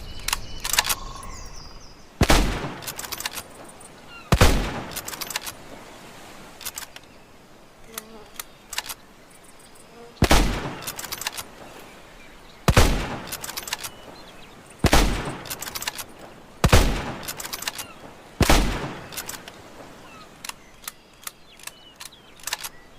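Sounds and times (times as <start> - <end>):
rifle bolt clicks: 0.2 - 1.0, 2.7 - 3.5, 4.8 - 5.6, 7.9 - 9.0, 10.7 - 11.5, 13.2 - 14.0, 14.9 - 16.1, 17.2 - 17.9, 18.5 - 19.6, 20.4 - 22.8
rifle shots: 2.2 - 3.6, 4.3 - 5.6, 10.2 - 11.5, 12.7 - 14.0, 14.8 - 19.4.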